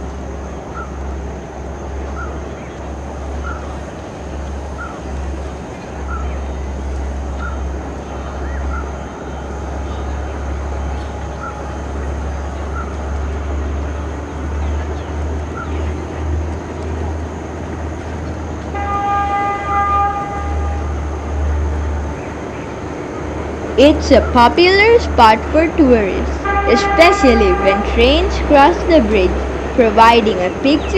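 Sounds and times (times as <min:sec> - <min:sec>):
train rumbling: 0:00.0 - 0:30.9
train horn chord: 0:18.7 - 0:22.5, 0:26.3 - 0:28.5.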